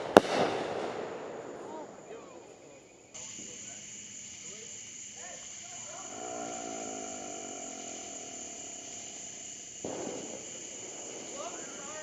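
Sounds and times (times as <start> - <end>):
high-pitched insect trilling: 3.2 - 12.0.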